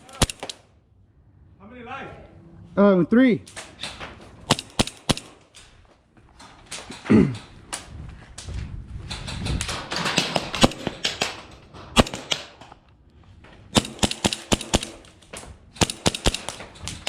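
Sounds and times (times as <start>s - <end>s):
airsoft guns firing: 0.0s - 0.6s, 4.5s - 5.4s, 9.7s - 12.7s, 13.7s - 17.0s.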